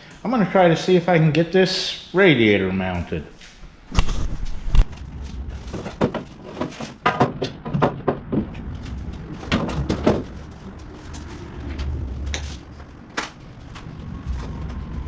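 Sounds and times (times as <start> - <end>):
clunks and knocks of radiator: 5.8 - 8.6.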